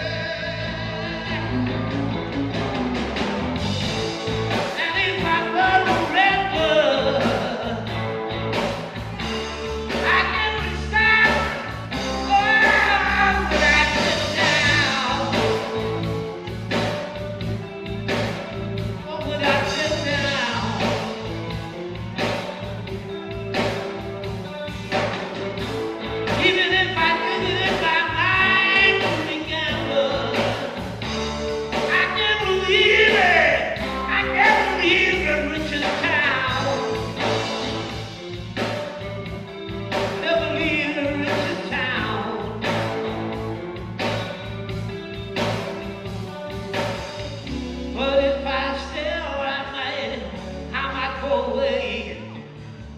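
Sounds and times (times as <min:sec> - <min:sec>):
reggae band music with singing: 0:00.0 - 0:52.9.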